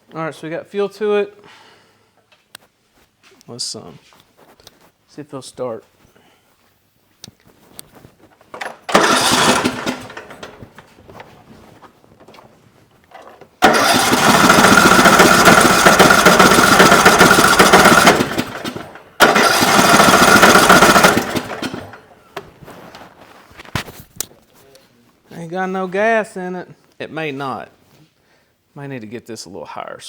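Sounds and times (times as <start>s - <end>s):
engine cranking without starting: 8.5s - 11.2s, 13.1s - 22.2s.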